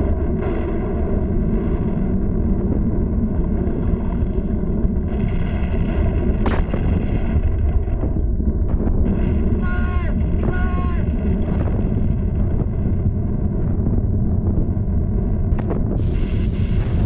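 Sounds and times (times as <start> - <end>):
deep volcano rumble: 0.0 - 17.0
sharp crack: 5.4 - 7.8.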